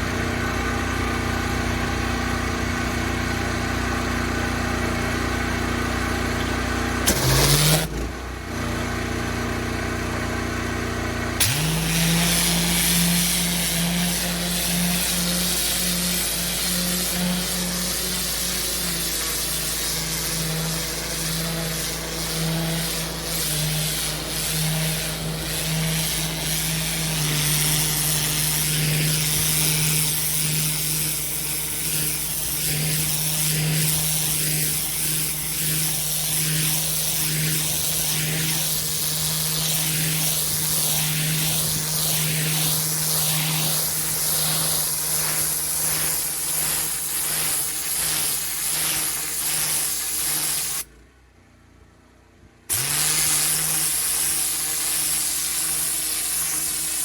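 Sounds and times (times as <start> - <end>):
pressure washer spraying water: 7.0 - 7.9, 11.4 - 50.9, 52.7 - 57.0.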